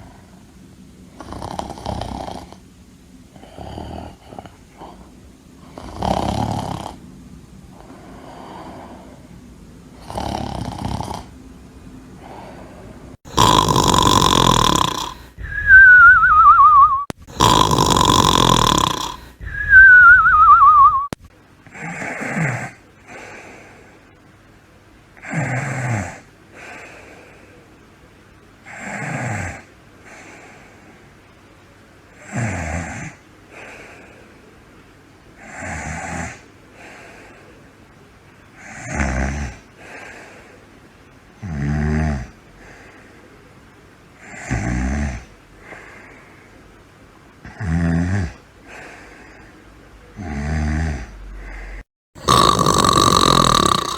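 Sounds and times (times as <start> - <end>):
person snoring: 1.2 - 2.6, 3.4 - 7.0, 10.0 - 11.3, 13.3 - 23.5, 25.2 - 26.9, 38.6 - 39.6, 41.4 - 42.4, 44.2 - 45.3, 47.5 - 48.9, 50.2 - 53.9
whistling snore: 5.7 - 7.0, 13.4 - 21.2, 38.6 - 39.6, 44.2 - 45.3.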